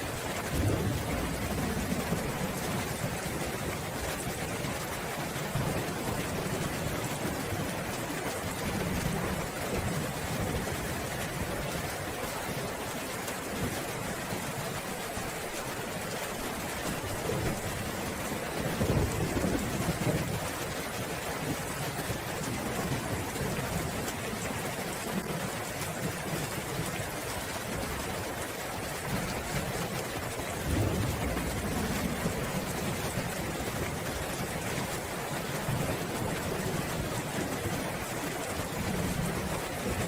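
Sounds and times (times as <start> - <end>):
heavy rain: 0.0 - 40.0
rolling thunder: 0.3 - 4.0, 30.5 - 35.0.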